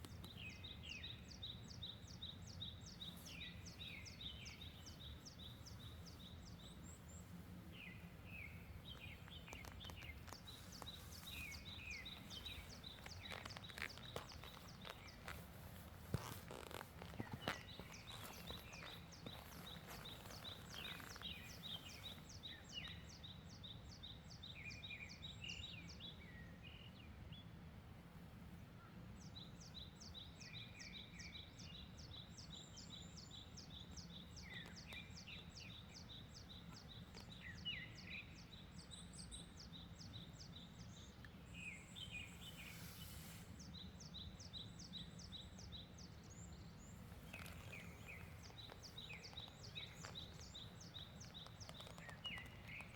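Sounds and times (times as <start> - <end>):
birds chirping: 0.0 - 27.0, 29.3 - 52.9.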